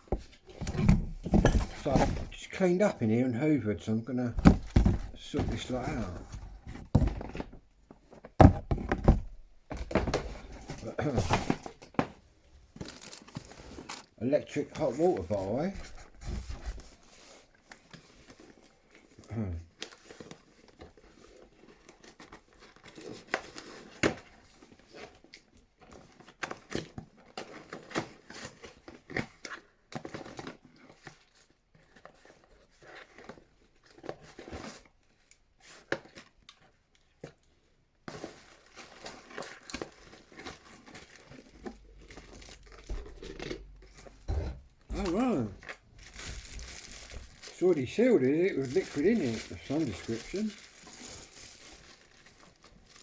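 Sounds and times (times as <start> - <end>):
packaging torn and crinkled: 12.8 - 14.1, 38.4 - 44.0, 45.0 - 53.0.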